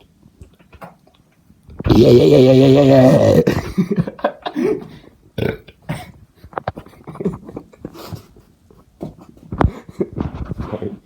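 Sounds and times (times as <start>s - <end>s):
person burping: 1.9s - 4.0s, 4.6s - 6.1s.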